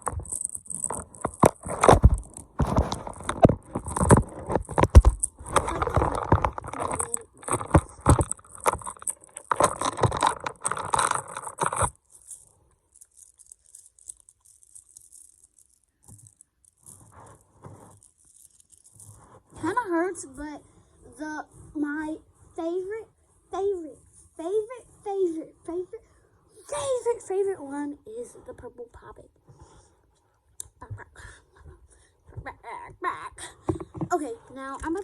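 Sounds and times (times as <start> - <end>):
plastic toy clicking and rattling: 0.0 - 19.1.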